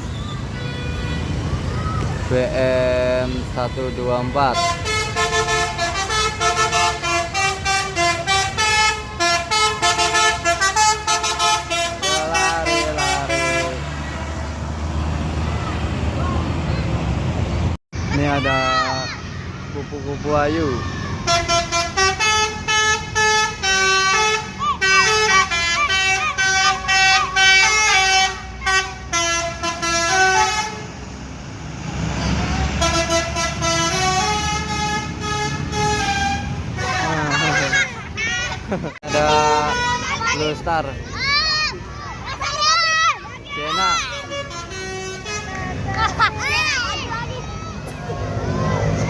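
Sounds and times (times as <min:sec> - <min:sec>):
musical bus air horn melody: 0:03.5 - 0:13.9, 0:21.3 - 0:31.0, 0:32.7 - 0:37.8, 0:39.0 - 0:40.1, 0:43.8 - 0:45.6.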